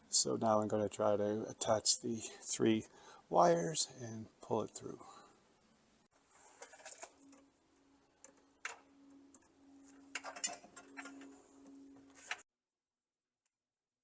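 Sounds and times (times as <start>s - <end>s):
electrical wires clicking and rustling: 6.2s - 7.5s, 8.1s - 12.4s.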